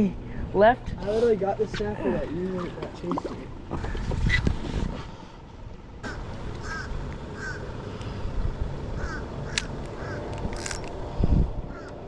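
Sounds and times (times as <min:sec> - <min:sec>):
steady low rumble: 0:00.0 - 0:12.0
bird calling: 0:06.0 - 0:08.1, 0:09.0 - 0:10.8, 0:11.7 - 0:12.0.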